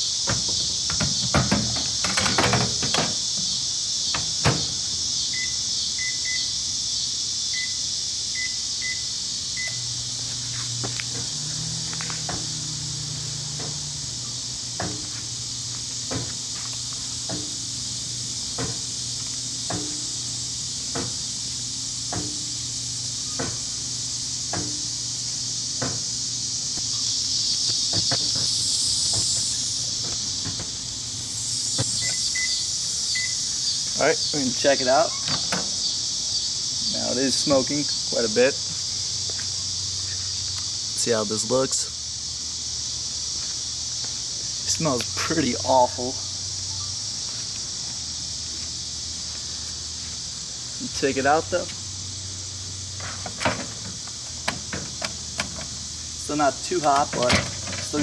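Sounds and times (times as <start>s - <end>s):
microwave humming with hiss: 0.0s - 58.0s
microwave keypad beeps: 5.4s - 6.5s, 7.6s - 7.8s, 8.4s - 9.8s, 32.0s - 32.6s, 33.2s - 33.4s.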